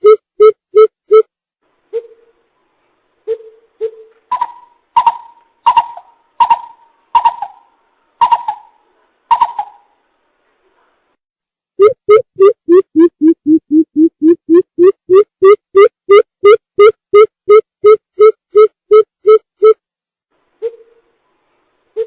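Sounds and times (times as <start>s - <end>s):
bird hooting call: 3.3s - 9.9s.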